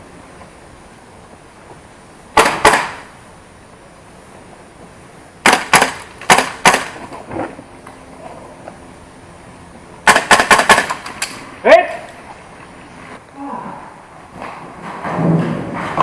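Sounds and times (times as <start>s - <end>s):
airsoft gun shots: 2.4s - 3.1s, 5.4s - 7.0s, 10.0s - 11.4s.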